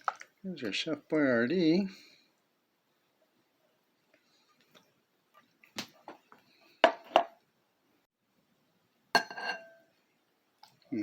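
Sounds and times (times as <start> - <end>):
metal utensil clinking on dish: 9.2 - 9.8.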